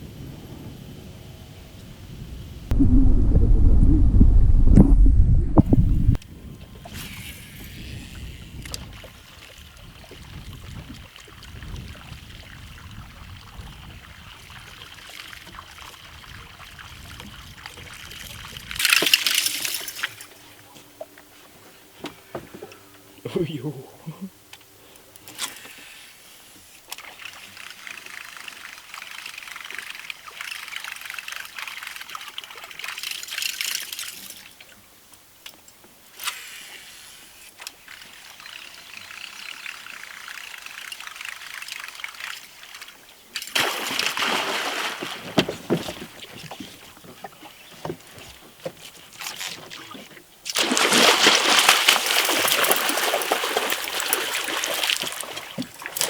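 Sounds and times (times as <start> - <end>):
water splashing and trickling: 6.7 - 20.7, 25.8 - 34.9, 36.8 - 56.0.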